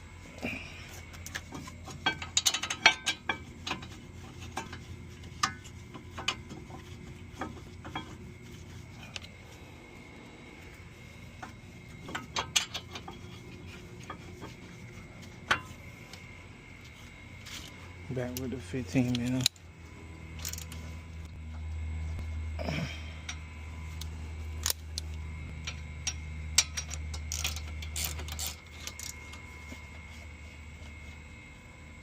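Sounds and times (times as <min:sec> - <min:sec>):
metal tools clinking: 0:02.0 - 0:03.9.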